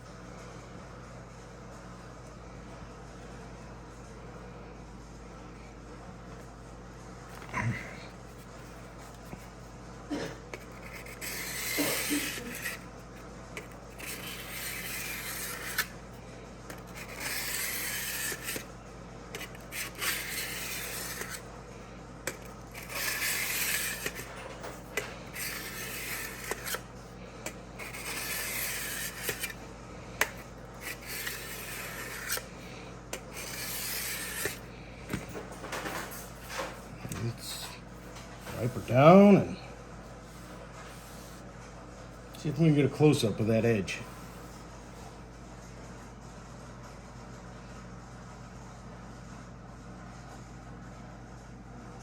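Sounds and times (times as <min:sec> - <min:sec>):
sharpening block scraping blade: 0:10.6 - 0:12.8, 0:13.6 - 0:15.9, 0:16.7 - 0:18.7, 0:19.4 - 0:21.4, 0:22.3 - 0:24.4, 0:25.3 - 0:26.8, 0:27.8 - 0:29.6, 0:30.2 - 0:32.5, 0:33.1 - 0:34.6.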